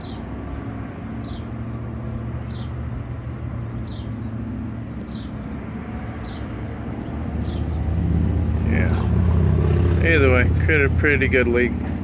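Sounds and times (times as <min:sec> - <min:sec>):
engine idling: 0:06.2 - 0:12.0.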